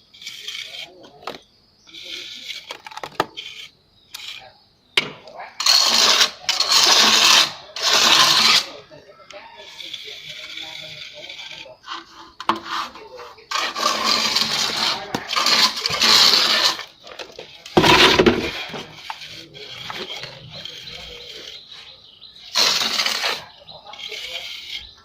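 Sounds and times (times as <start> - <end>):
trowel scraping render on wall: 0.0 - 25.0.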